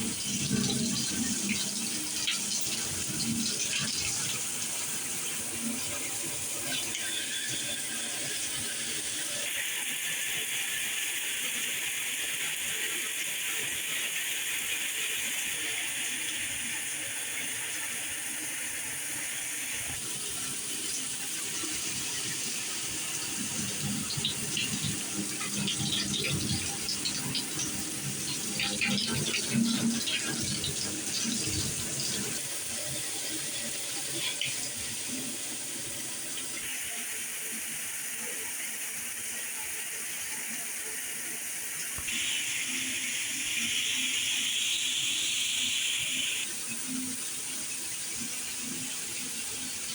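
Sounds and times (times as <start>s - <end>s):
showerhead spraying water: 20.6s - 32.4s.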